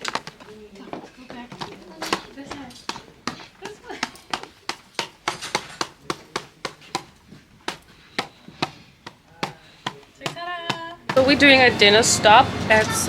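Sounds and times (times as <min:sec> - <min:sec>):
sharp taps on hard surface: 0:01.5 - 0:11.3.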